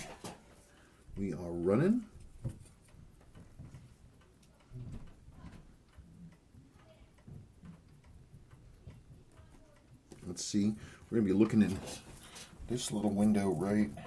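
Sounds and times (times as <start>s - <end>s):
watch movement ticking: 0.0s - 14.0s.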